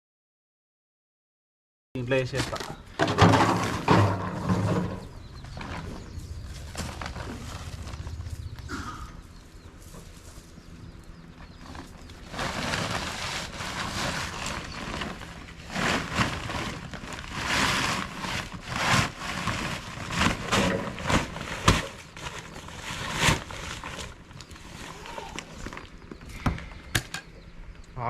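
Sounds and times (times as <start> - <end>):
nylon nets rustling: 5.4 - 9.1, 11.6 - 26.0.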